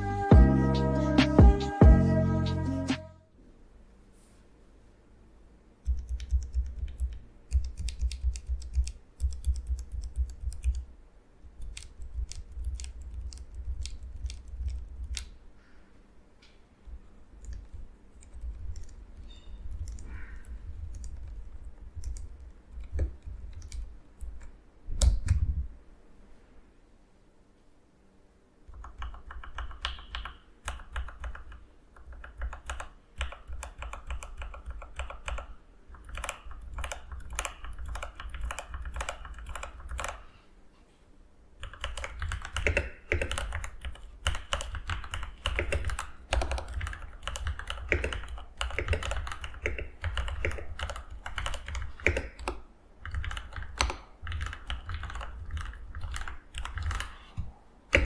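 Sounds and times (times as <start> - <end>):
mechanical keyboard typing: 5.8 - 15.4, 16.8 - 25.4, 28.7 - 40.3, 41.6 - 57.3.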